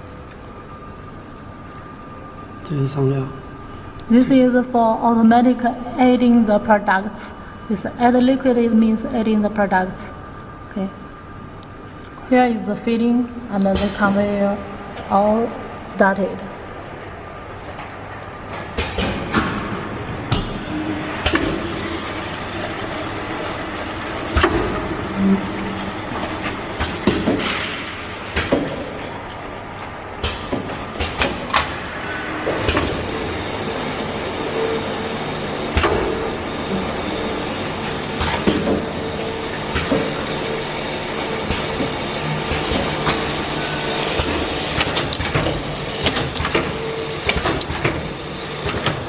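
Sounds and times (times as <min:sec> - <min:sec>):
bottling machine humming: 0:00.0 - 0:49.0
bottles clicking and clinking: 0:20.7 - 0:27.4.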